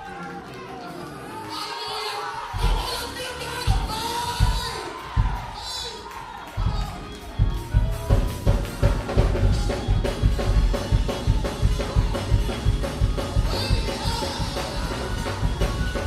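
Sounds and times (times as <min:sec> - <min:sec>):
live band music: 0:00.0 - 0:16.0
drum kit with heavy bass drum: 0:03.7 - 0:05.6, 0:06.6 - 0:16.0.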